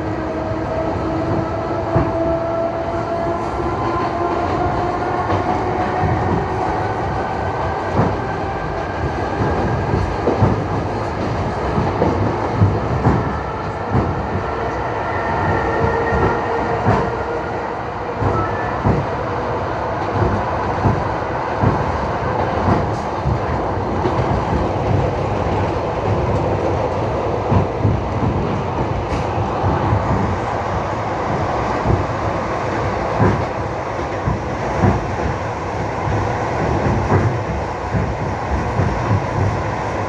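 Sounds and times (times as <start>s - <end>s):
train wheels knocking over rail joints: 4.0s - 14.4s, 31.7s - 35.4s.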